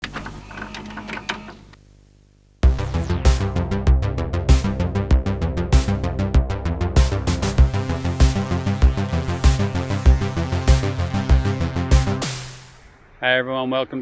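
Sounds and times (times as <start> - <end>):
electronic music with drum-machine beat: 2.6 - 13.2.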